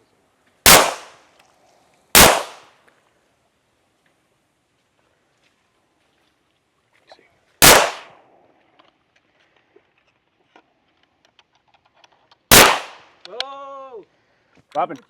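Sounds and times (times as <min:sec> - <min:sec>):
pistol gunshot with echo: 0:00.7 - 0:01.2, 0:02.2 - 0:02.7, 0:07.6 - 0:08.2, 0:12.5 - 0:13.0.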